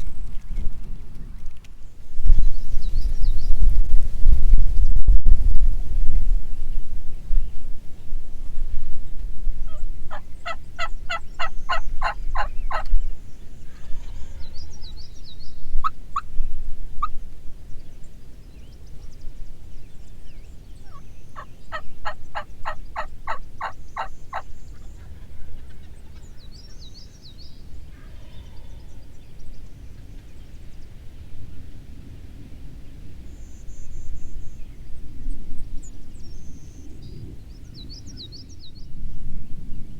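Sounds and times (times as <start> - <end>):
small birds chirping: 0.0 - 3.8, 9.1 - 31.0
wind rumbling on microphone: 0.0 - 39.9
wild turkey gobbling: 9.7 - 12.9, 20.8 - 26.3.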